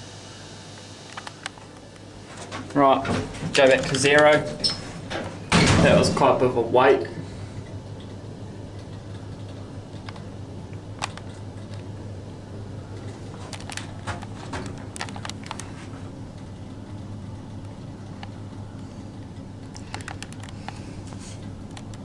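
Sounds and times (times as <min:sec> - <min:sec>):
lift humming: 0:00.0 - 0:22.0
light clicks and rattles: 0:01.1 - 0:05.8, 0:07.6 - 0:11.9, 0:12.9 - 0:22.0.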